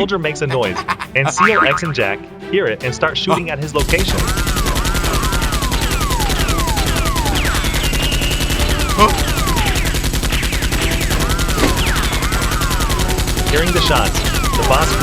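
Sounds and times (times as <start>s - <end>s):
rapid automatic gunfire: 3.8s - 15.0s.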